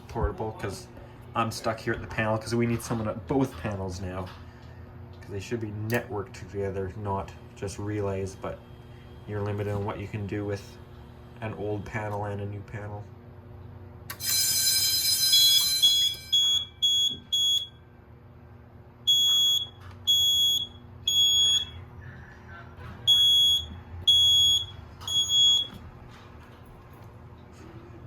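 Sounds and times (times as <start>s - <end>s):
fire alarm beeps: 14.1s - 17.8s, 19.0s - 21.9s, 23.0s - 25.8s
fire alarm buzzing: 14.1s - 17.8s, 19.0s - 21.9s, 23.0s - 25.8s.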